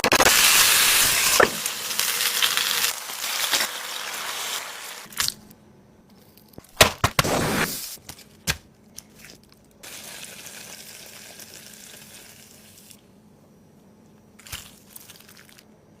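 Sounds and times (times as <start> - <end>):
food sizzling: 0.4 - 5.1, 9.8 - 13.0
food crackling: 0.4 - 5.4, 14.4 - 15.7.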